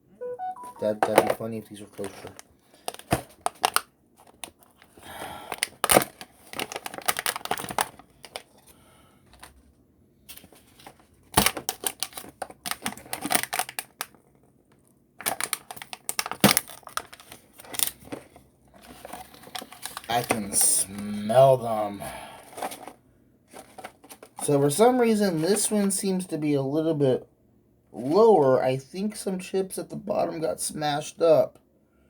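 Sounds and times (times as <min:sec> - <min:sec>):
foil seals tearing: 0:05.6 - 0:08.4, 0:11.4 - 0:14.2.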